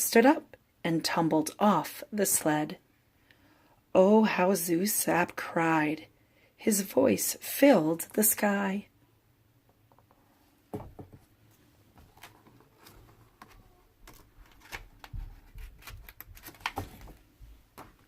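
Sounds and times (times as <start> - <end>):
paper rustling: 11.9 - 18.0
page turning: 12.0 - 18.0.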